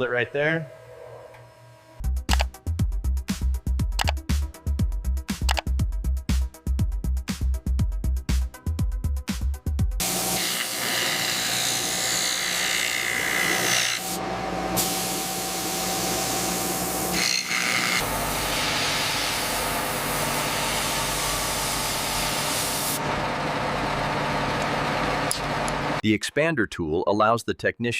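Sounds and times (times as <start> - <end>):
music beat: 2.0 - 10.0
hissing mechanical noise: 14.0 - 26.0.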